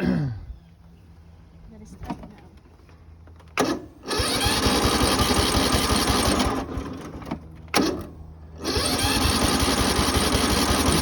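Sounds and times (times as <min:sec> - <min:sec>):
lawn mower engine cranking: 0:03.2 - 0:11.0.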